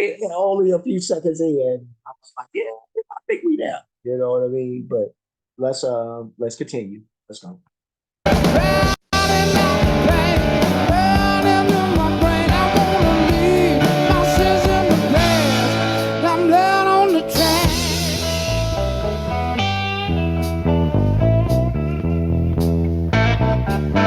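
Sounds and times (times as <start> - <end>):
blues-rock band playing: 8.3 - 24.0.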